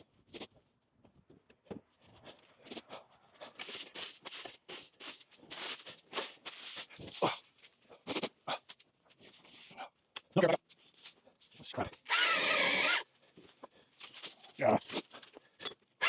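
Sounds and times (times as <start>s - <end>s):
holly brush rustling and crackling: 1.9s - 11.7s.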